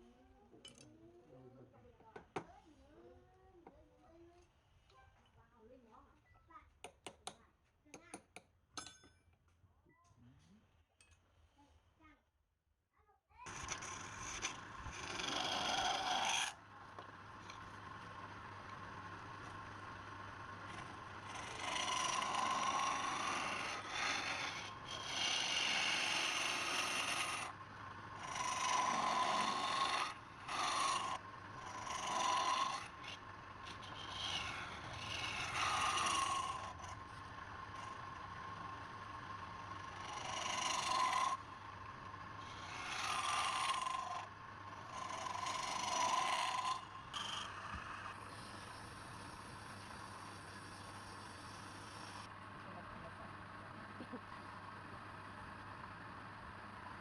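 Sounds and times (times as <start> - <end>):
tool rubbing spinning wood: 13.5 - 52.3
low hum: 13.7 - 57.0.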